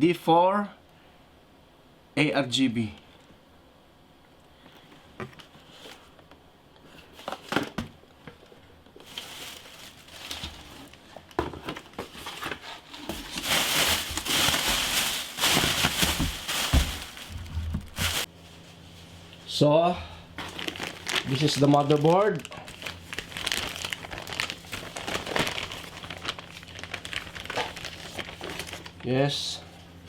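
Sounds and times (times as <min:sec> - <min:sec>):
plastic packaging crinkling: 0:09.0 - 0:18.8, 0:20.4 - 0:29.2.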